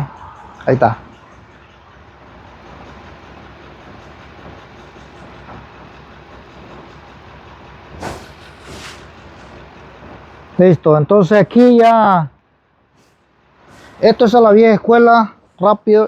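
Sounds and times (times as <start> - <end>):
engine idling with misfire: 0.0 - 16.0
short hisses: 8.0 - 9.5, 13.0 - 14.1.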